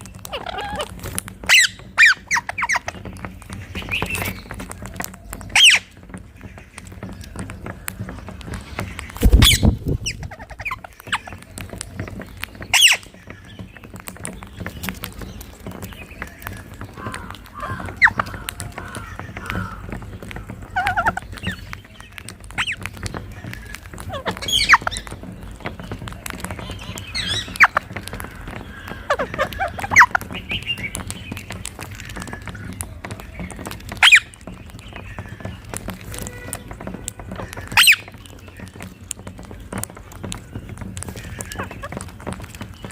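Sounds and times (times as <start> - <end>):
parakeet screeches: 0.2 - 3.0, 12.7 - 13.1, 20.7 - 21.6, 24.0 - 25.0, 27.2 - 30.2, 34.0 - 34.4, 37.4 - 38.1
parakeet shrieks: 0.3 - 0.9
short chattering bird notes: 5.4 - 42.9.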